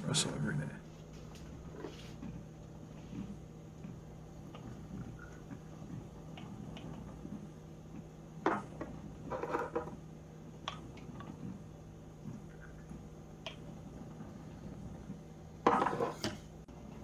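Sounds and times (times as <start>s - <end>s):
steady low hum: 0.0s - 17.0s
dishes clattering: 15.6s - 16.4s.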